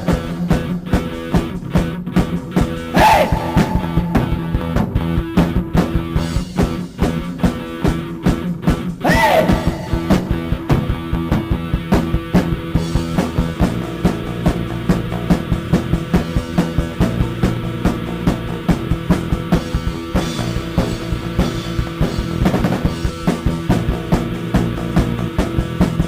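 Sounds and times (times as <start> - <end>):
rock band playing: 0.0 - 26.0
person shouting: 2.9 - 4.6, 9.0 - 10.1.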